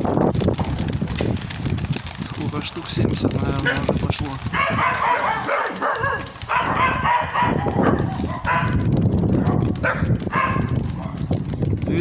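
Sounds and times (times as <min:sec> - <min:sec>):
wind buffeting microphone: 0:00.0 - 0:12.0
dog barking: 0:03.6 - 0:03.9, 0:04.5 - 0:11.2.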